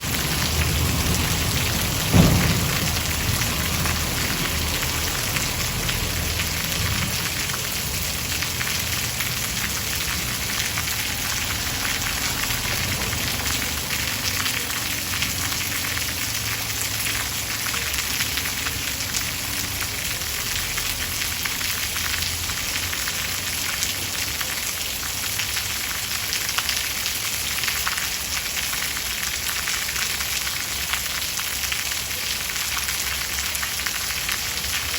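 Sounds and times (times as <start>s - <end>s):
steady rain pouring: 0.0s - 34.9s
brief low thump: 2.0s - 3.0s.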